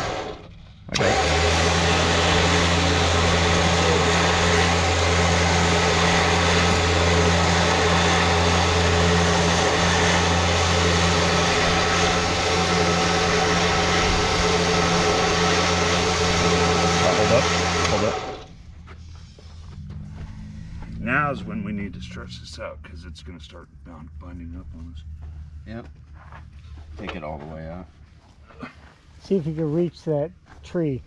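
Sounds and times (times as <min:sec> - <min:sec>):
electric winch motor humming: 0:00.0 - 0:18.7.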